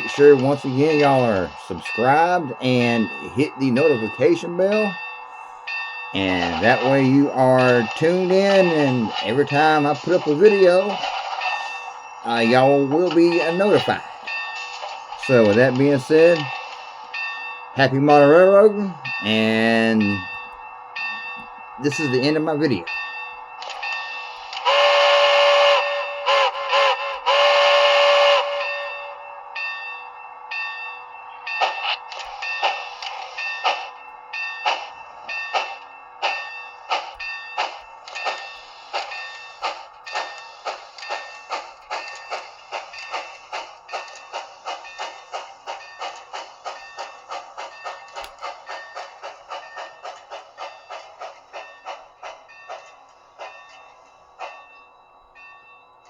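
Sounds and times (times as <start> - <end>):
steam hissing: 0.0 - 20.3, 23.8 - 29.2, 31.6 - 54.8
steam locomotive chuffs: 0.0 - 56.0
steam whistle through small speaker: 24.7 - 29.0.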